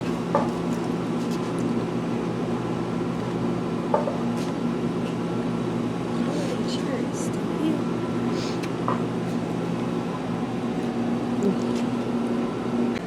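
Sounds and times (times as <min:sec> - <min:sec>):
mechanical hum: 0:00.0 - 0:13.0.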